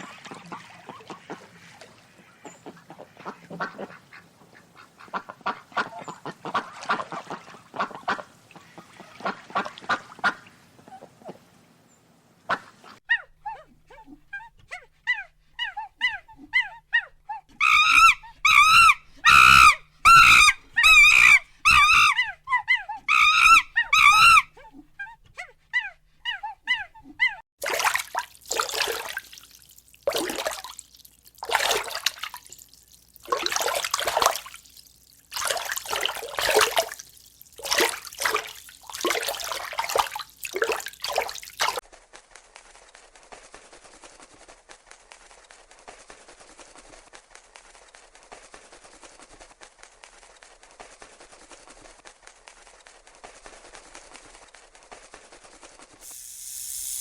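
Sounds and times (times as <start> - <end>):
ducks quacking: 0.0 - 11.5, 12.5 - 13.0, 17.6 - 22.4.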